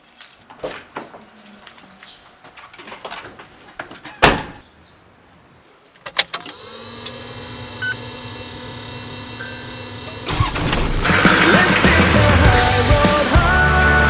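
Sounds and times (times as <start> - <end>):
car engine starting and idling: 6.2 - 14.0
music: 11.1 - 14.0.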